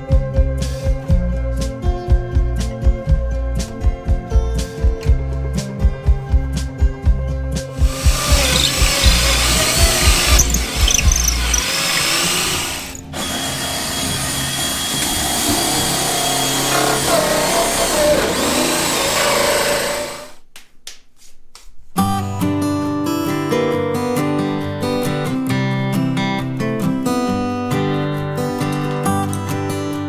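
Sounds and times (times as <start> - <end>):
power tool running: 7.8 - 20.4.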